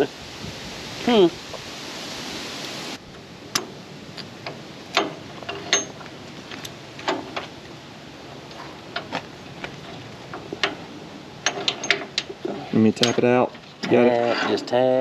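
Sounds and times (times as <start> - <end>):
metal tools clinking: 4.4 - 7.6, 8.4 - 15.0.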